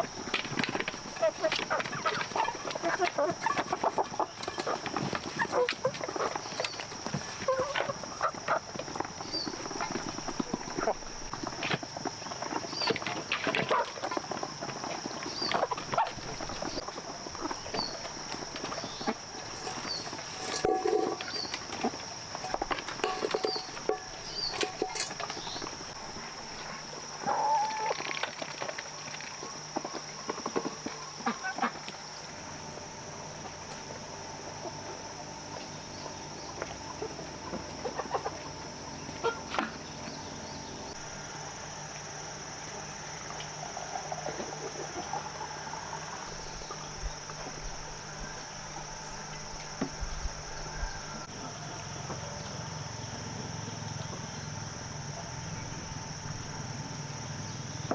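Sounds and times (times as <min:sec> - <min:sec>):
chickens clucking: 0:00.0 - 0:41.0, 0:42.7 - 0:52.6.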